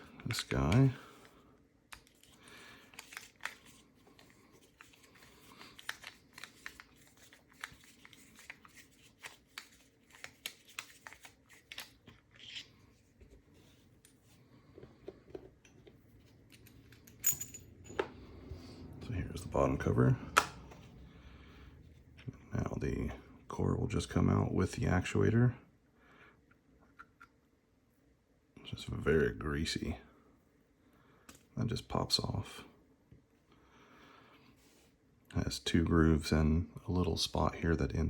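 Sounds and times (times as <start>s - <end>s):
ringing metallic clink: 17.2s - 18.0s.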